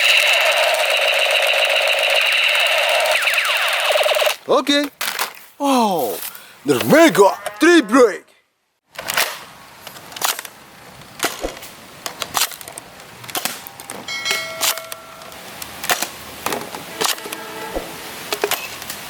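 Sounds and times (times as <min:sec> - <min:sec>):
short ringing chime: 0:14.1 - 0:15.4.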